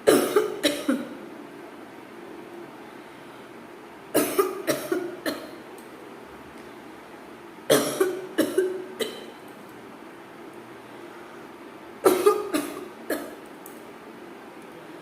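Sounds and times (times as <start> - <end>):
person coughing: 0.1 - 1.2, 4.2 - 5.6, 7.7 - 9.3, 12.0 - 13.4.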